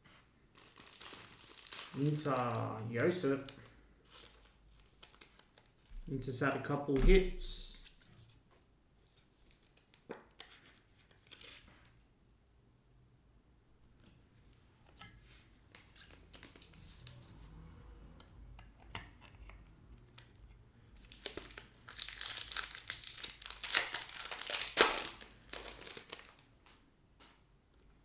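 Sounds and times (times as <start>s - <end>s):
wrapper tearing and crinkling: 0.5s - 5.9s, 9.5s - 11.6s, 15.8s - 17.2s, 21.0s - 26.5s
cards clicking and rustling: 15.7s - 17.3s, 21.0s - 26.4s.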